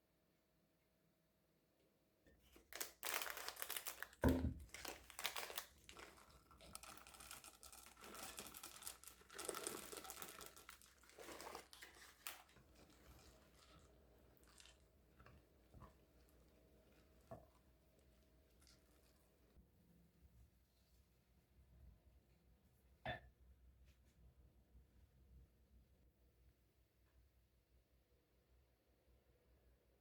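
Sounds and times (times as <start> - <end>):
crinkling and rustling: 2.4 - 19.6.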